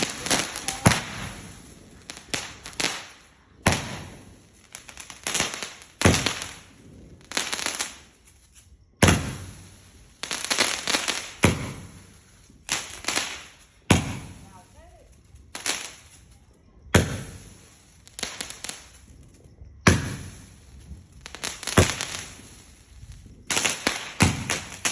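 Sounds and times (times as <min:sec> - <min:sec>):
fireworks banging: 0:00.0 - 0:24.9
fireworks crackling: 0:00.0 - 0:24.9.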